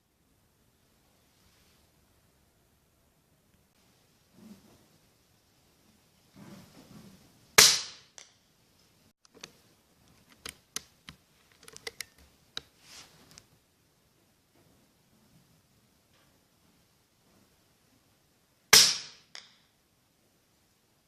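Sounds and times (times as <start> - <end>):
air rifle shot: 18.7 - 19.3.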